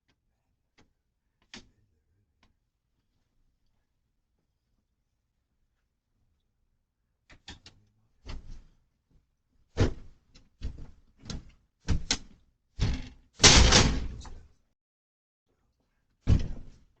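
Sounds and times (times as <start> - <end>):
mailbox rattling and knocking: 12.8 - 14.4.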